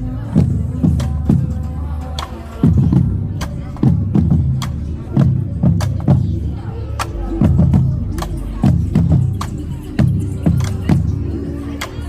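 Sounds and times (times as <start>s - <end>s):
deep drum hits: 7.0s - 11.0s.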